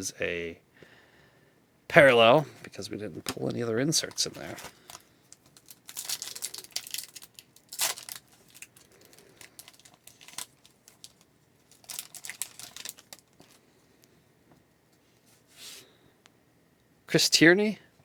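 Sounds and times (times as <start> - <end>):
foil wrapper crinkling and tearing: 3.3 - 13.6.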